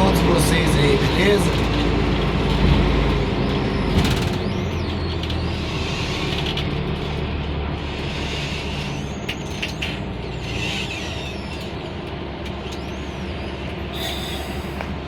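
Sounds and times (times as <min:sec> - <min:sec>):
bus diesel engine running: 0:00.0 - 0:15.0.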